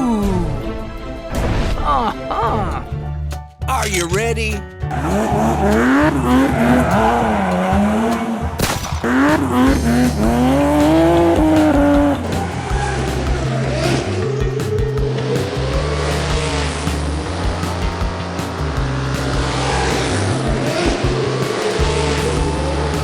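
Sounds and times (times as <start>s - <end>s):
background music with low notes: 0.0s - 23.0s
race car engine revving: 4.9s - 23.0s.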